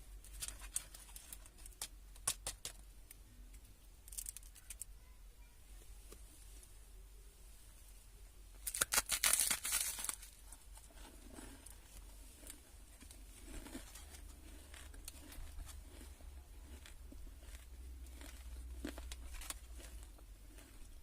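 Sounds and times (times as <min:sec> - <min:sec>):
plastic wrapper crinkling and tearing: 0:00.2 - 0:02.8, 0:04.0 - 0:04.9, 0:08.6 - 0:10.9, 0:12.4 - 0:20.8.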